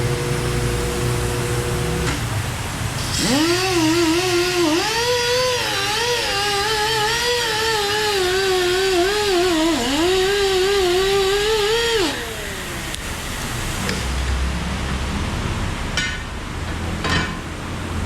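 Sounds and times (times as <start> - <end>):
power tool whining: 0.0 - 2.2, 3.0 - 13.4.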